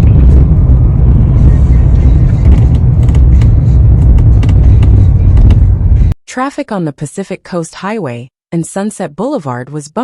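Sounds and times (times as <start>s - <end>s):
wind buffeting microphone: 0.0s - 6.1s.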